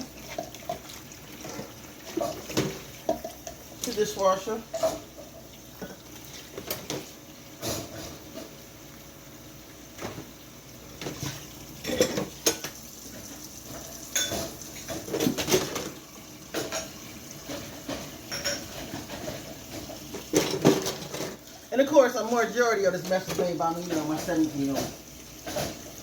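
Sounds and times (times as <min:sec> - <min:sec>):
dishes and cutlery clinking: 0:04.7 - 0:08.5, 0:11.0 - 0:12.8, 0:13.7 - 0:21.4, 0:23.0 - 0:26.0.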